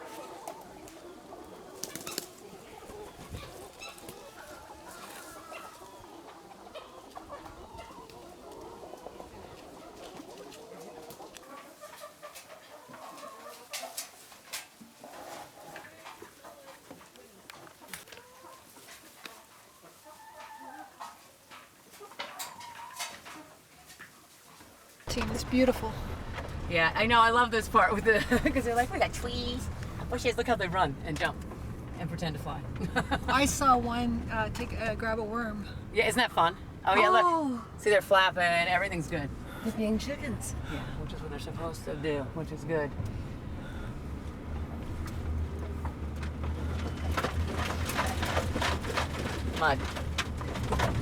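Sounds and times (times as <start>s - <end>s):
hens clucking softly: 0.0s - 27.0s
wings flapping: 1.7s - 2.5s, 45.0s - 51.0s
light ticks and scratches: 44.2s - 51.0s.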